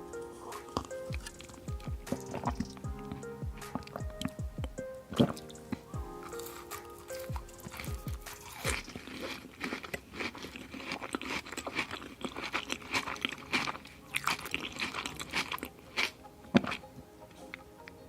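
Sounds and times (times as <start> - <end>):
crunchy food chewing: 5.1 - 16.9.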